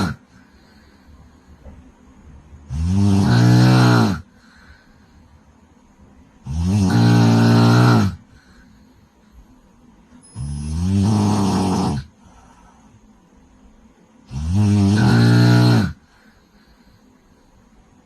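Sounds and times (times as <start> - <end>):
woman snoring loudly: 0.0 - 0.9, 2.7 - 4.8, 6.4 - 8.6, 10.2 - 12.3, 14.2 - 16.2.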